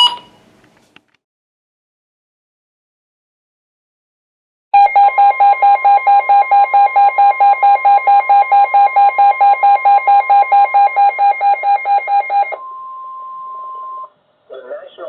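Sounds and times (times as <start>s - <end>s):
alarm beeping rapidly: 0.0s - 0.4s, 4.8s - 12.7s
steady warning alarm tone: 0.0s - 0.4s, 4.8s - 14.1s.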